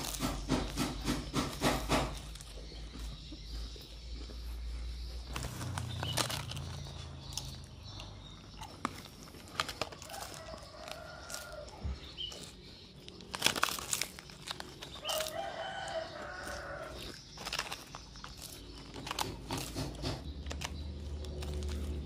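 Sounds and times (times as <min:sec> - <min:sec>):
utensils clicking and scraping on griddle: 0:00.0 - 0:02.5, 0:14.8 - 0:22.0.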